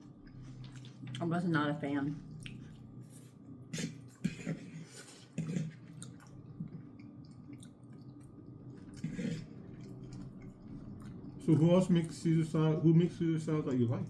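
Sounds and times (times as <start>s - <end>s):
person chewing food: 0.0s - 1.2s, 2.3s - 11.7s.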